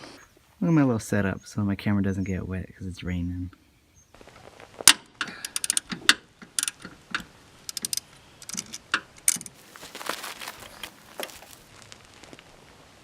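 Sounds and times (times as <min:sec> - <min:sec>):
socket ratchet clicking: 0:05.5 - 0:06.0, 0:06.6 - 0:06.9, 0:07.7 - 0:09.5.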